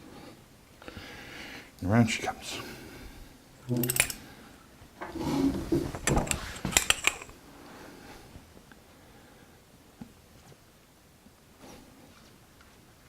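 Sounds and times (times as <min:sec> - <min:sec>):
metal tools clinking: 0:03.7 - 0:04.3, 0:06.0 - 0:07.3.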